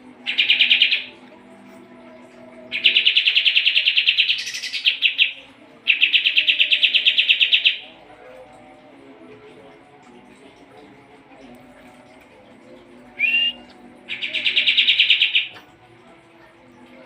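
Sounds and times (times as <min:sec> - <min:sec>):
bird chattering song: 0:00.3 - 0:01.1, 0:02.7 - 0:07.8, 0:14.1 - 0:15.6.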